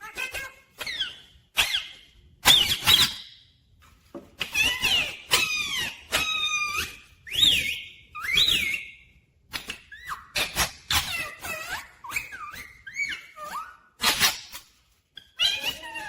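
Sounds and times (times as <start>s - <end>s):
parakeet squawking and whistling: 0.0s - 3.4s, 4.4s - 14.6s.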